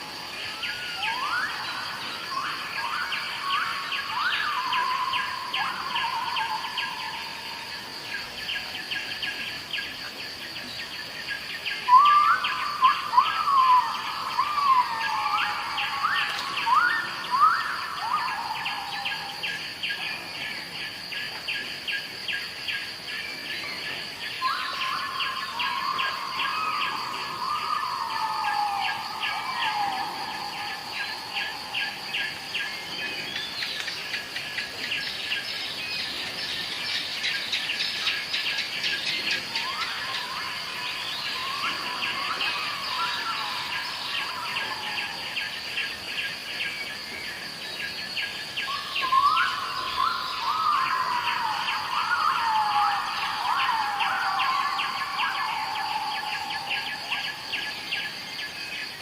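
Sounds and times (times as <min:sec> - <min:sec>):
insects chirping: 0:00.0 - 0:59.0.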